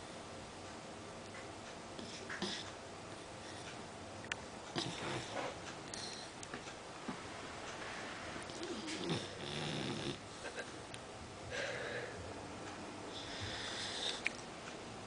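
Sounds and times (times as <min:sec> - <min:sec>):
dog snoring faintly: 0:02.0 - 0:02.7, 0:04.7 - 0:06.3, 0:08.4 - 0:10.5, 0:13.1 - 0:14.3.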